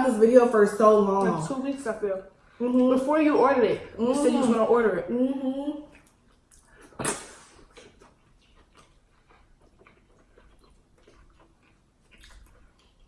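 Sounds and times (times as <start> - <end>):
quiet chewing: 5.8 - 13.0.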